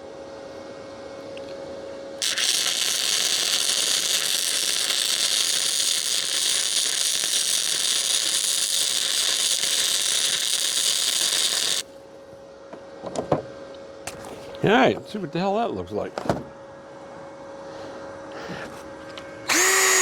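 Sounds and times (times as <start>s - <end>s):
welding arc crackling: 2.2s - 11.9s, 19.5s - 20.0s.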